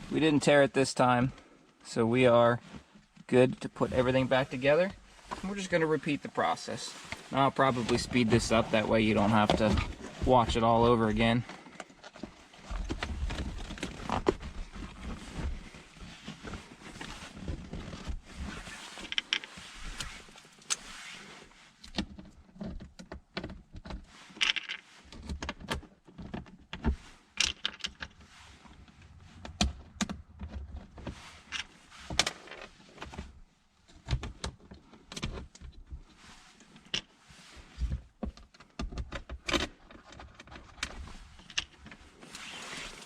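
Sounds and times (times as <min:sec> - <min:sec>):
tools and metal parts rattling: 0:24.4 - 0:24.9.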